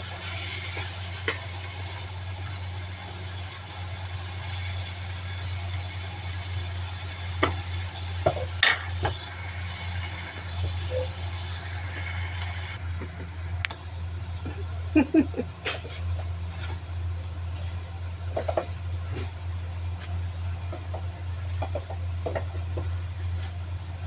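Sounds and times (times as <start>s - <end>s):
eggs sizzling in hot oil: 0.0s - 15.4s
steady low hum: 0.0s - 24.0s.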